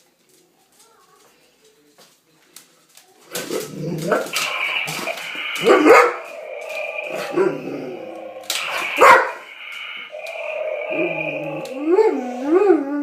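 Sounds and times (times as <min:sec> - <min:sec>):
dog barking: 0:05.6 - 0:06.3, 0:08.7 - 0:09.4
dog whining: 0:10.2 - 0:13.0.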